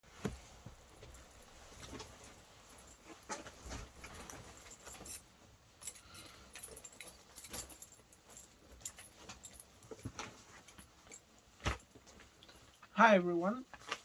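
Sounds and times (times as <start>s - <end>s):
faint metallic jingle: 0.8s - 11.9s.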